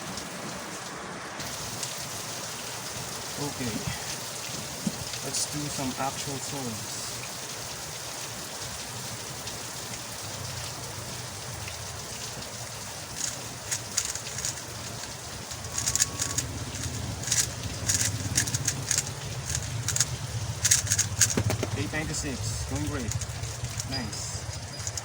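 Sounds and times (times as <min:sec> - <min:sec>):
background hiss: 0:00.0 - 0:25.0
puzzle cube plastic clicks: 0:13.1 - 0:25.0.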